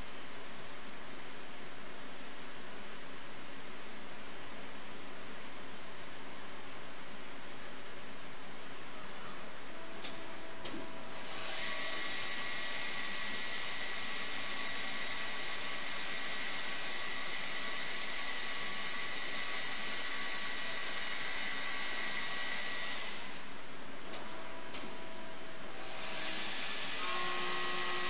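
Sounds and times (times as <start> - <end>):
machine spindle whine: 8.9 - 28.0.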